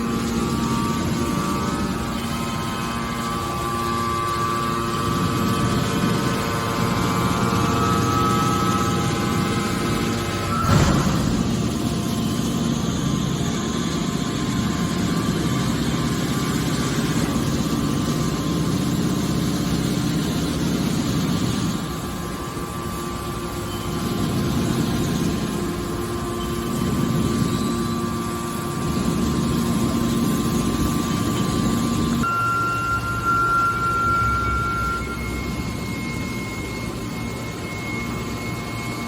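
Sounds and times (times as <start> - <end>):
hydraulic power unit humming: 0.0 - 39.0.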